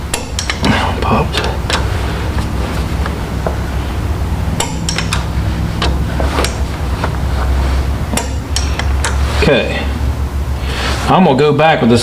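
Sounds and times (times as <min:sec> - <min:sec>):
steady low hum: 0:00.0 - 0:12.0
torque wrench clicking: 0:00.1 - 0:00.7, 0:04.6 - 0:06.6, 0:08.1 - 0:09.2.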